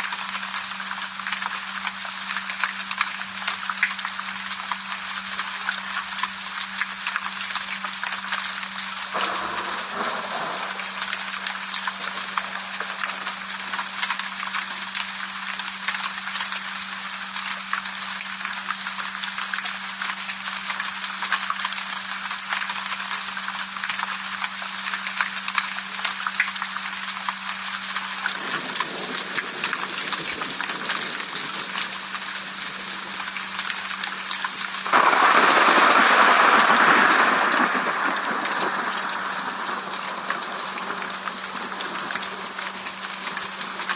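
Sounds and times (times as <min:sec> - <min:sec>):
rain falling: 0:00.0 - 0:43.9
low hum: 0:09.0 - 0:15.3.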